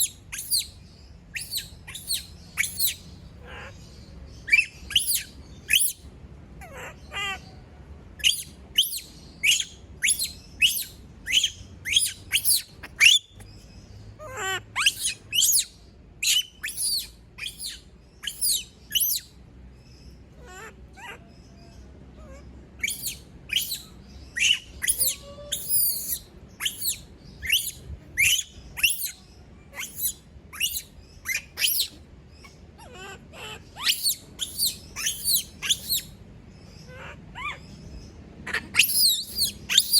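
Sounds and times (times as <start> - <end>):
monkey screaming: 0.0 - 0.7, 1.4 - 3.7, 4.5 - 6.0, 8.2 - 13.3, 14.2 - 19.3, 20.4 - 21.3, 22.2 - 32.0, 32.8 - 36.1, 36.9 - 37.6, 38.4 - 39.9.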